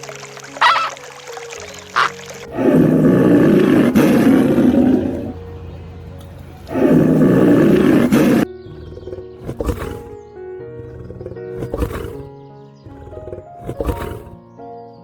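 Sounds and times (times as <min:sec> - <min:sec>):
big cat roaring: 0:02.0 - 0:05.5, 0:06.7 - 0:14.4.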